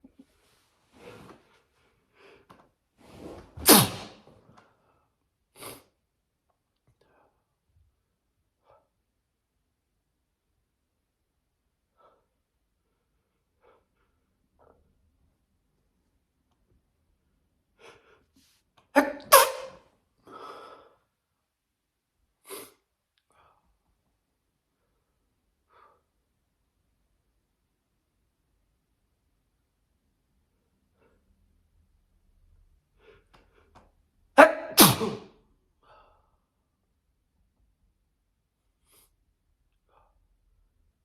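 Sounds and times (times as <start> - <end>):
person sneezing: 3.6 - 4.2, 19.0 - 19.8, 34.4 - 35.4.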